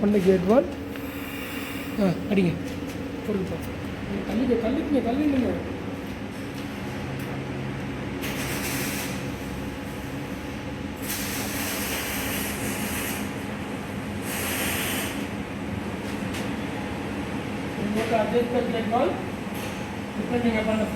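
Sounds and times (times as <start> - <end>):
steady low hum: 0.0 - 20.9
gas hissing through valve: 1.0 - 2.2, 14.2 - 15.3.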